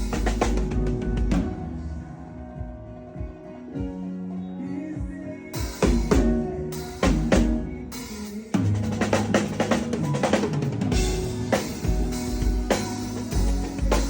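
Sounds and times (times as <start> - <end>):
drum strikes: 0.0 - 1.9, 5.6 - 14.0
band playing: 0.0 - 4.3, 5.0 - 14.0.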